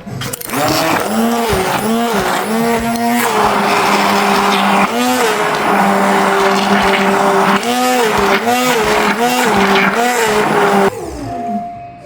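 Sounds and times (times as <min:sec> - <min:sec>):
immersion blender motor hum: 0:00.2 - 0:11.2.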